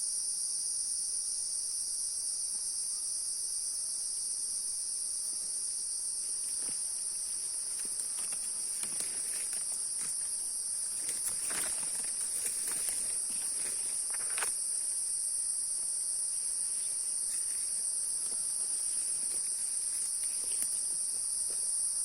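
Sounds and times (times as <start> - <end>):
crickets chirping: 0.0 - 22.0
rustling in dry undergrowth: 5.5 - 21.6.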